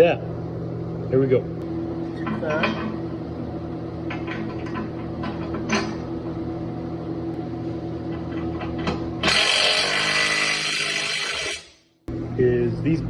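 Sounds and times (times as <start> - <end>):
low machine hum: 0.0 - 13.0
grinder whining: 9.2 - 11.8.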